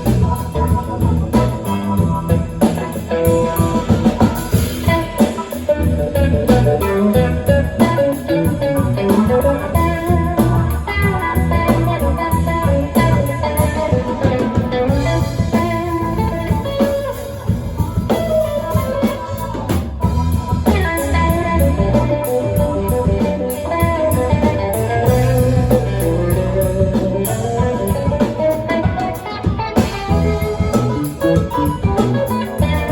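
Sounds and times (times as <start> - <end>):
bass guitar: 0.0 - 32.9
drums: 0.0 - 32.9
electric guitar lead: 0.0 - 32.9.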